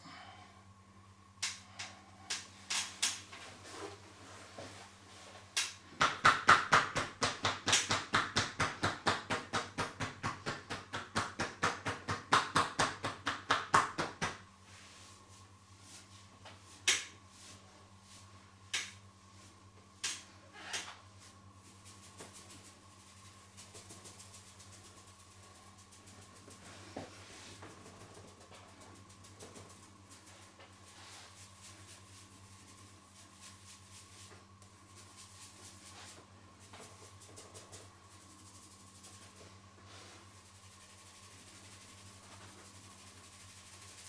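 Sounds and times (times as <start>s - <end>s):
hands slapping body rapidly: 5.6s - 14.4s
single pats and taps: 5.6s - 14.4s.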